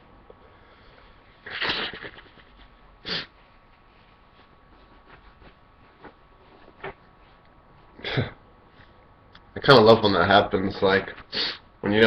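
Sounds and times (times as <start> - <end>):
faint breaths: 0.3 - 1.4
man sniffling: 3.0 - 3.5, 11.3 - 11.7.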